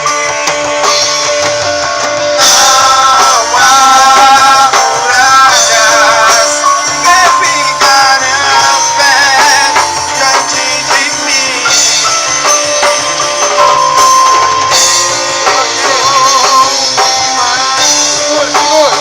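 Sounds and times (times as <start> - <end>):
band playing with drums: 0.0 - 19.0.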